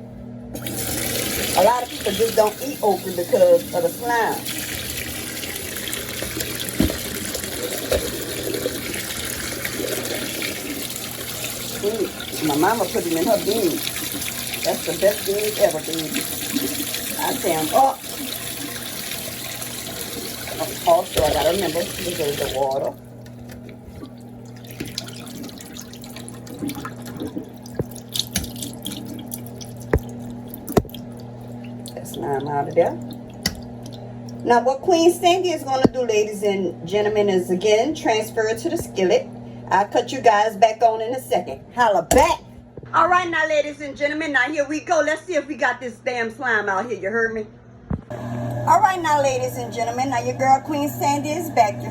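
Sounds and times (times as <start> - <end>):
steady low hum: 0.0 - 44.4, 47.4 - 51.9
tap water running into sink: 0.6 - 34.4.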